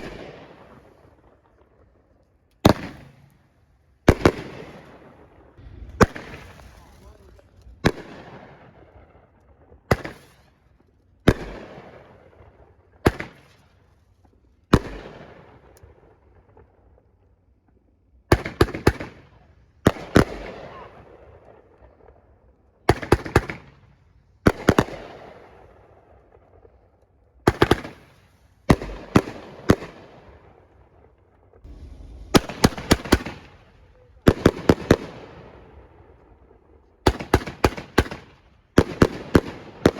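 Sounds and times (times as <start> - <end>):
fireworks banging: 2.6 - 12.1, 27.5 - 39.9.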